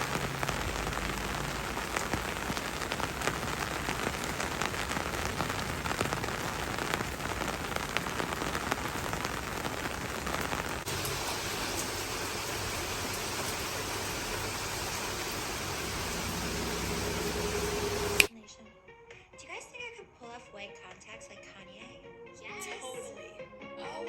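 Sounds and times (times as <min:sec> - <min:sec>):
raindrops ticking: 0:00.0 - 0:18.3
steady rain falling: 0:00.0 - 0:18.3.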